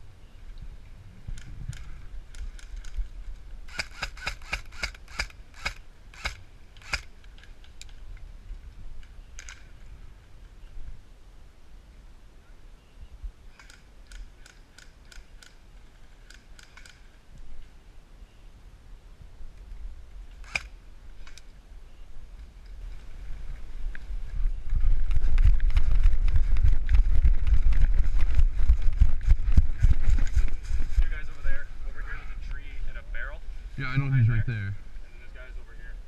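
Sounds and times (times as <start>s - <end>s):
airsoft gun shots: 3.7s - 7.1s.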